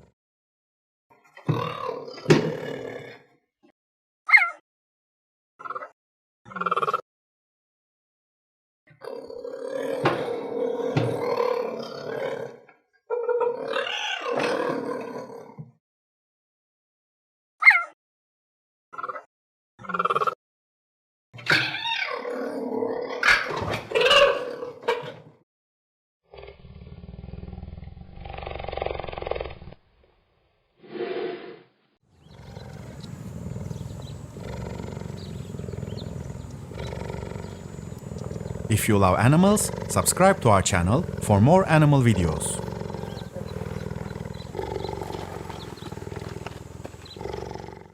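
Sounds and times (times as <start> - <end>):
cheetah calling: 32.2 - 47.9.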